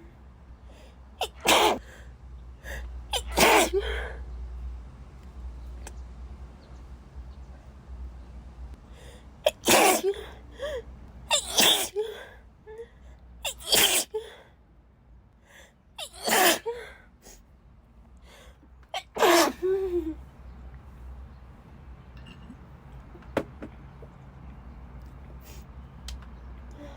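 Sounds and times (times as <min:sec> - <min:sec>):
woman sneezing: 0:01.2 - 0:01.8, 0:03.1 - 0:04.1, 0:09.5 - 0:10.4, 0:11.3 - 0:12.2, 0:13.5 - 0:14.4, 0:16.0 - 0:16.9, 0:19.0 - 0:20.0.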